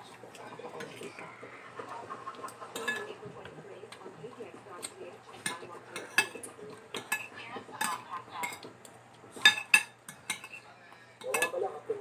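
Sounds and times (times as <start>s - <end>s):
cutlery and dishes clinking: 0.0s - 1.3s, 2.7s - 4.0s, 4.7s - 11.8s.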